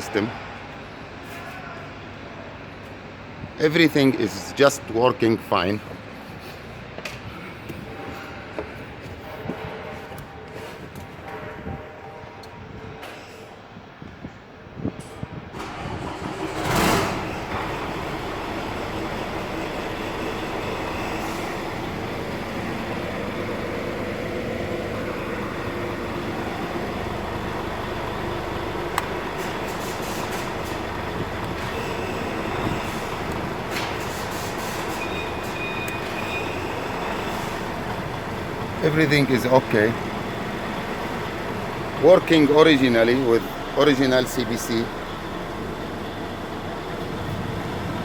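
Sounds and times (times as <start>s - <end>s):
diesel truck engine running: 15.3s - 48.0s
loud short burst of noise: 15.5s - 18.1s.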